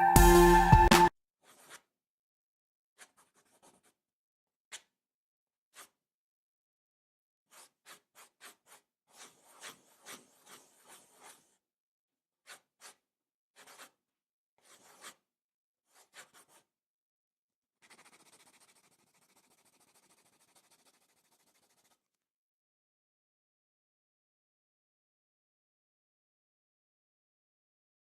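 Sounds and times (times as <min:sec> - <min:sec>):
pencil scratching on paper: 0:07.5 - 0:11.6, 0:13.6 - 0:14.0, 0:14.6 - 0:15.2, 0:15.9 - 0:16.7, 0:17.8 - 0:22.2.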